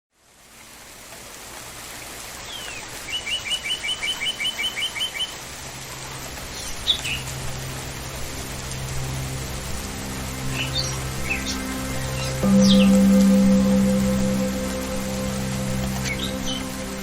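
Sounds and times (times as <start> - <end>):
rain hiss: 0.1 - 17.0
low steady tone: 7.0 - 17.0.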